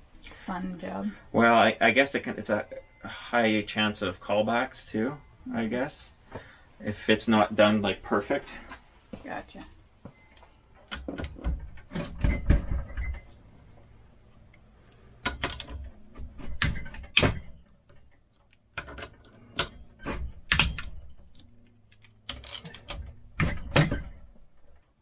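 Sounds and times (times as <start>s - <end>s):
metal tools clinking and knocking: 15.3s - 15.8s, 20.6s - 23.0s.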